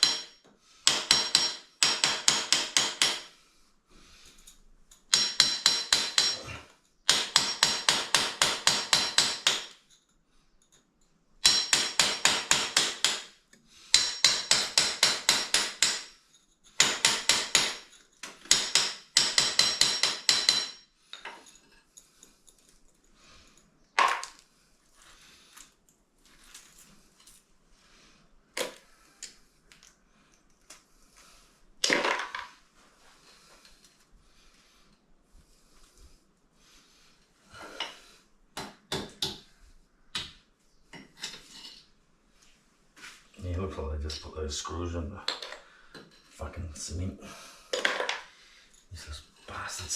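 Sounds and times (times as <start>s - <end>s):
hammer chipping cement: 5.1s - 9.8s, 11.4s - 13.3s, 16.8s - 20.7s.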